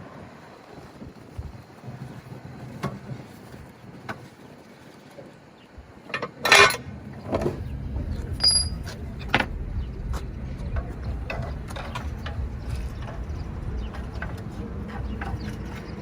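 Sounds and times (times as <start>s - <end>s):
tools clinking on metal: 6.4s - 6.8s
low steady rumble: 6.8s - 16.0s.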